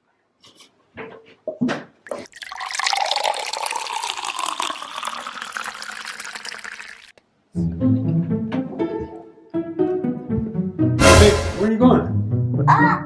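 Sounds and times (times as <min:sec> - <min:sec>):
water running: 0:02.1 - 0:07.2.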